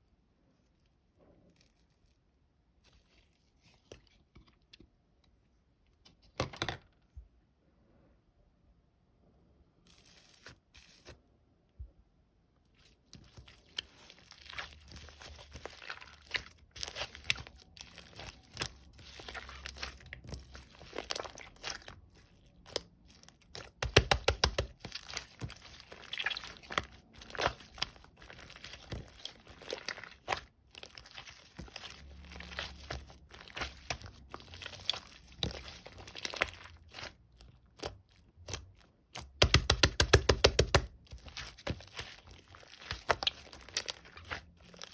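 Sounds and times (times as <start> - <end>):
slime crackling and popping: 13.1 - 44.9.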